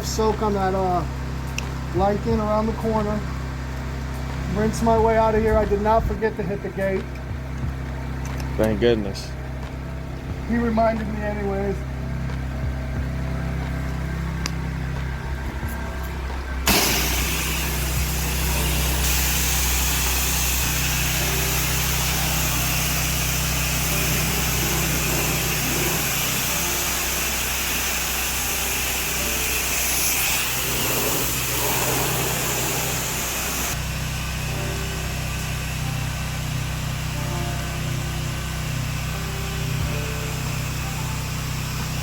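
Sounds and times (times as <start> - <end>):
pressure washer engine running: 0.0 - 42.0
water spray hissing: 16.7 - 33.8.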